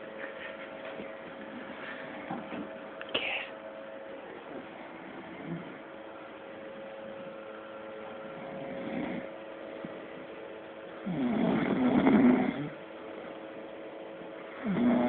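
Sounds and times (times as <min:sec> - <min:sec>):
man snoring: 0:08.4 - 0:09.3, 0:11.0 - 0:12.8, 0:14.6 - 0:15.0.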